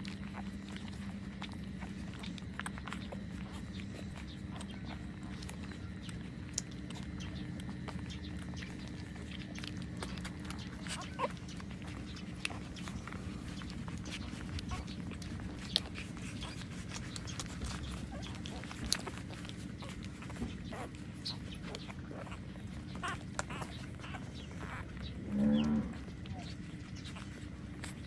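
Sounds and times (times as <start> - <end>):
puppies nursing clicks: 0.0 - 28.0
steady low hum: 0.0 - 28.0
puppy squeak: 23.0 - 24.9.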